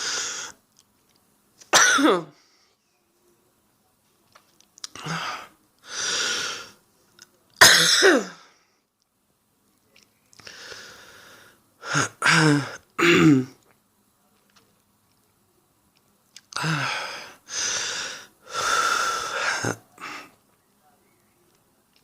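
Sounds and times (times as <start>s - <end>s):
noisy breaths: 0.0s - 0.6s, 5.0s - 7.0s, 10.4s - 12.7s, 16.6s - 20.5s
woman coughing: 1.8s - 2.3s, 7.6s - 8.4s, 12.0s - 13.5s.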